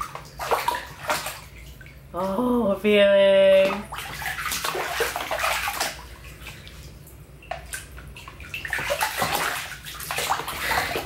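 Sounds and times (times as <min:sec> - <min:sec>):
water splashing and sloshing: 0:00.0 - 0:11.0.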